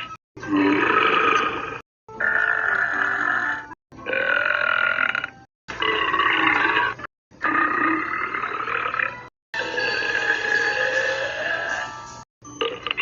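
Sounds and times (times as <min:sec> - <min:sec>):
long drawn-out belches: 0:00.4 - 0:09.3.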